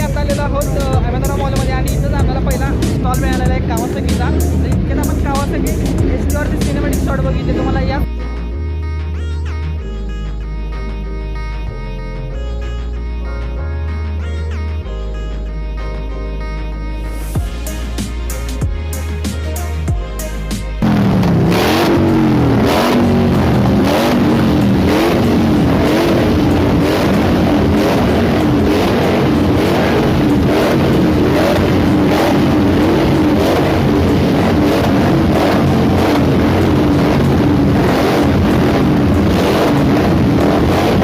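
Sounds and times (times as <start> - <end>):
motorcycle engine revving: 0.0 - 8.1, 17.1 - 41.0
electronic music: 0.0 - 41.0.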